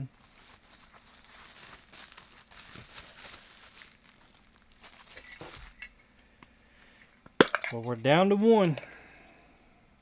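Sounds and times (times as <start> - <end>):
plastic packaging crinkling: 0.0 - 6.0.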